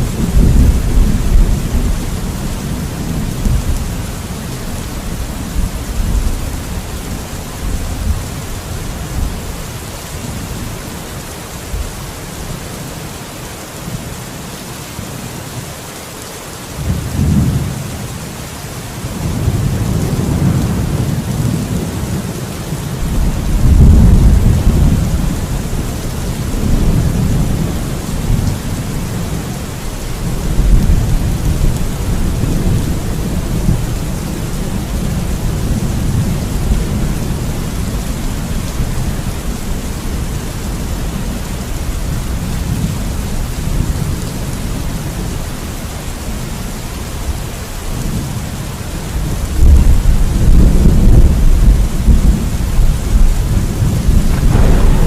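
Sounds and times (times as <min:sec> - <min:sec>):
rolling thunder: 0:00.0 - 0:04.6, 0:23.0 - 0:45.3, 0:49.2 - 0:55.0
heavy rain: 0:00.0 - 0:55.0
thunder crack: 0:53.1 - 0:55.0.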